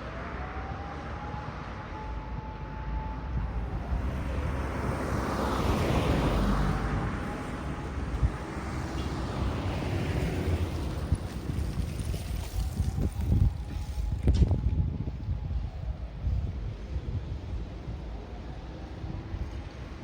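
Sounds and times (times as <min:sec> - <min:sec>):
vehicle passing by: 0:03.6 - 0:14.0.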